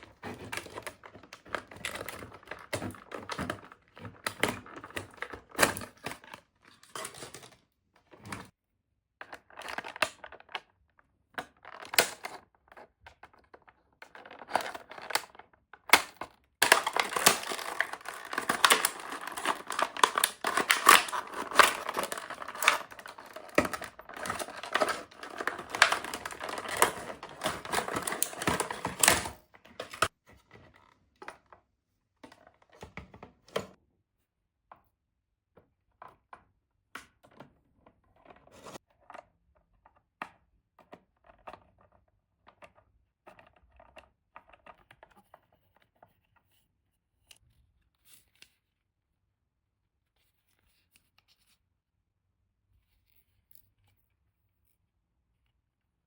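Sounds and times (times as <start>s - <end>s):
packaging crinkling and tearing: 0.0s - 7.6s, 14.1s - 30.1s
packaging rustling and clicking: 0.0s - 8.5s, 13.2s - 30.1s.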